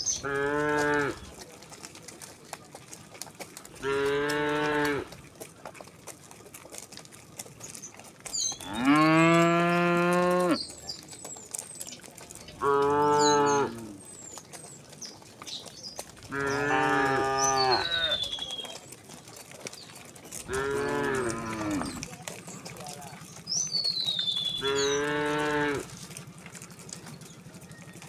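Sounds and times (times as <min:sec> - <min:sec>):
cattle mooing: 0:00.1 - 0:01.4, 0:03.7 - 0:05.2, 0:08.6 - 0:10.7, 0:12.6 - 0:14.2, 0:16.3 - 0:18.6, 0:20.4 - 0:28.0.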